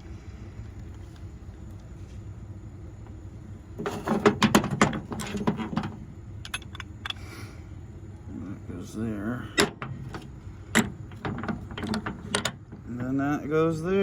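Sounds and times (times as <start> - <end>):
tool parts clicking and knocking: 3.8 - 7.2, 9.6 - 13.2.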